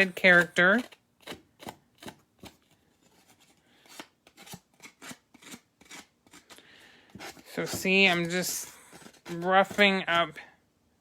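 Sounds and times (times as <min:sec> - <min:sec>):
scissors scratching paper edge: 0:07.2 - 0:09.9.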